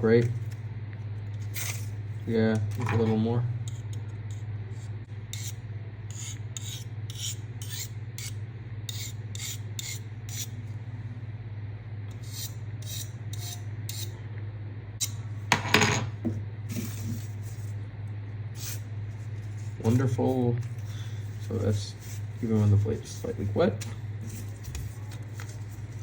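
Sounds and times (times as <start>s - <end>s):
knife stroked on sharpening stone: 5.4s - 10.5s, 12.2s - 14.1s, 18.6s - 18.9s.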